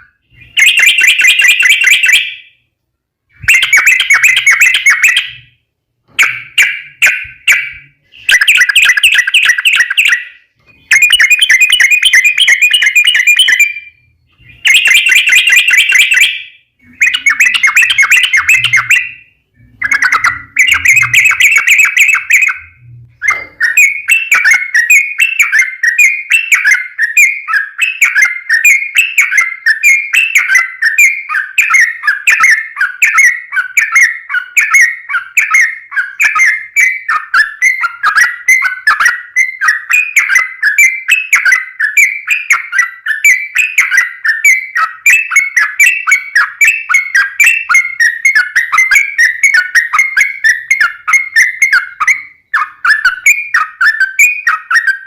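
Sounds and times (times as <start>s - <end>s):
bulbul singing bubbly song: 6.1s - 28.6s.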